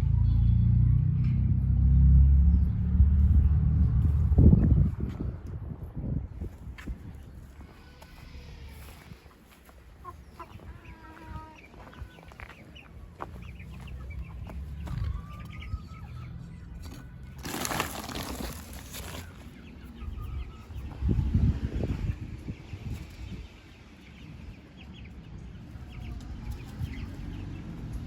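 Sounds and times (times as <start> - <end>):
low rumble: 0.0 - 6.5
chickens clucking: 7.4 - 28.0.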